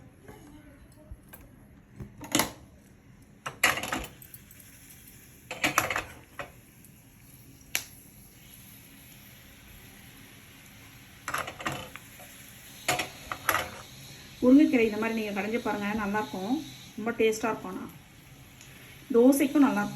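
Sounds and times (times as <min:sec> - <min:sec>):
metal utensils clattering against pan: 0:11.3 - 0:11.9.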